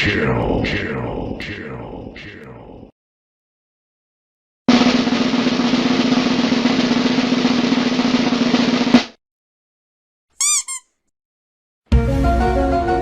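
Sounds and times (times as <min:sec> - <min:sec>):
snare drum roll: 0:04.7 - 0:09.2
short pitched chirp: 0:10.4 - 0:10.9.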